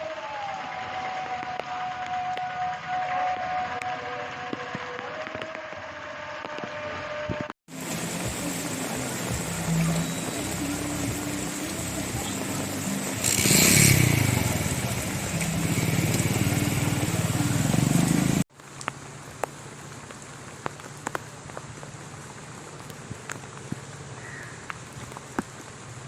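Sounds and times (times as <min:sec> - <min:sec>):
vehicle engine running: 0:07.8 - 0:18.4.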